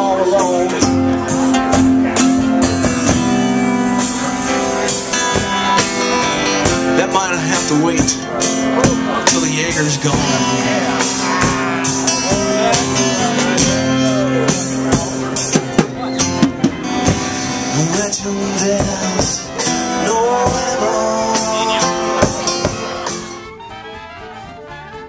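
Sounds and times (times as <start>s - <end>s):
live rock band playing: 0.0s - 25.0s
person singing: 7.0s - 15.3s, 17.6s - 23.4s.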